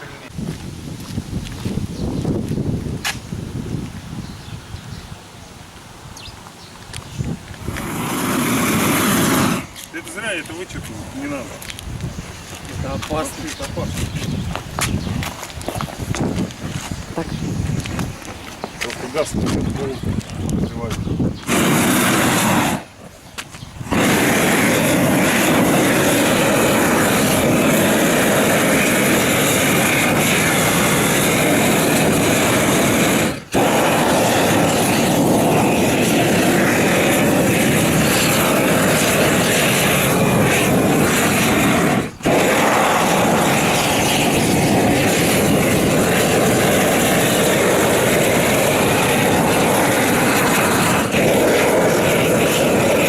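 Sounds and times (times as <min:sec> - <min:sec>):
gas torch roaring: 0:07.5 - 0:11.7, 0:18.8 - 0:23.2, 0:23.8 - 0:53.0.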